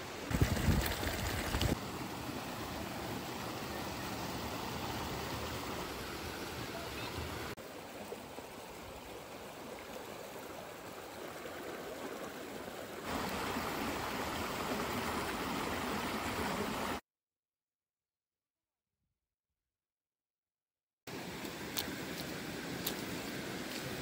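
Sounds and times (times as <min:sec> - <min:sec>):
stream water rushing: 0:00.0 - 0:17.0, 0:21.1 - 0:24.0.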